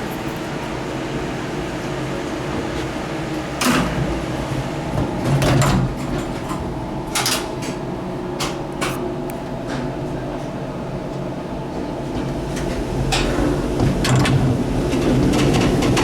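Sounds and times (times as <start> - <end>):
tram machinery hum: 0.0 - 16.0
doors clunking and rattling: 12.0 - 16.0.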